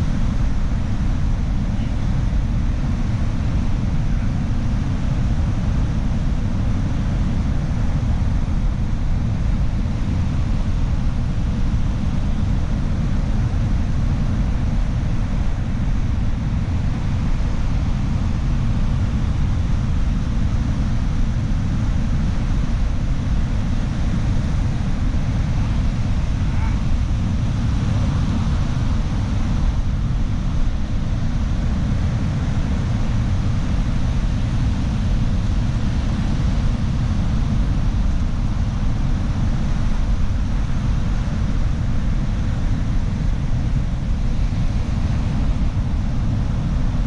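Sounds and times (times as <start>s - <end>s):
wind noise: 0.0s - 47.0s.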